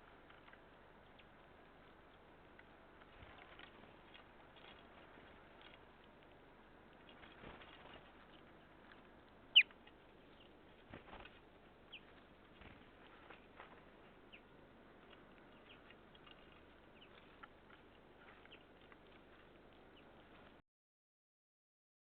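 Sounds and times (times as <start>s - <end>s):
faint bird chirps: 9.5s - 10.6s, 11.9s - 12.2s.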